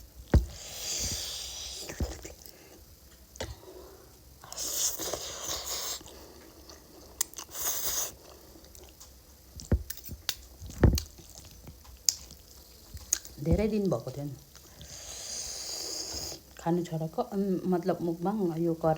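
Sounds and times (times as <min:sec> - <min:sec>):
soft thumps: 0:00.2 - 0:01.3, 0:09.6 - 0:09.9, 0:10.6 - 0:11.8, 0:13.4 - 0:13.8
person chewing noodles: 0:00.4 - 0:13.4, 0:14.5 - 0:16.6
noisy noodle slurps: 0:04.5 - 0:06.2, 0:07.3 - 0:08.3.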